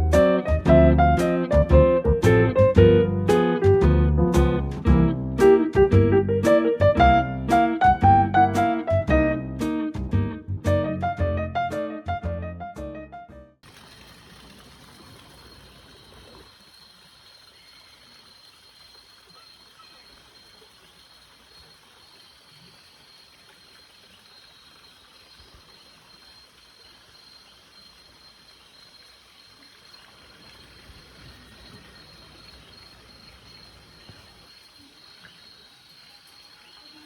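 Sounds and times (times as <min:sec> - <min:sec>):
insect trill: 0:15.2 - 0:37.0.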